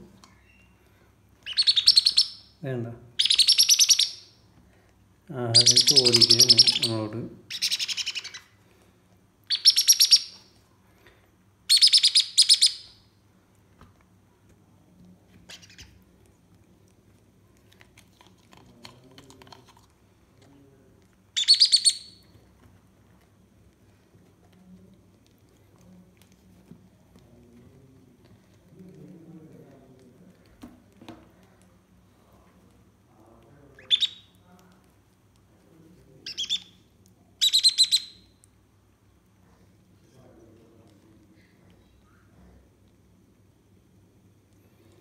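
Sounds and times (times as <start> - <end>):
parrot chick begging calls: 1.4 - 2.5, 3.2 - 4.3, 5.6 - 8.5, 9.5 - 10.4, 11.7 - 12.9, 21.4 - 22.2, 33.8 - 34.3, 36.3 - 36.7, 37.4 - 38.2.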